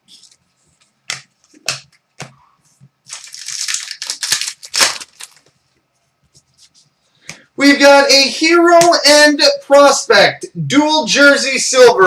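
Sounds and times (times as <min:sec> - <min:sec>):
sharp crack: 0:03.2 - 0:05.3.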